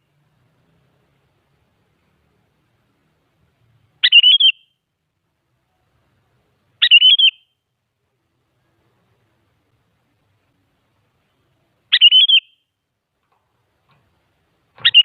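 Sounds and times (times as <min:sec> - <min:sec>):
bulbul singing: 0:04.0 - 0:04.8, 0:06.8 - 0:07.6, 0:11.4 - 0:12.8, 0:14.7 - 0:15.0.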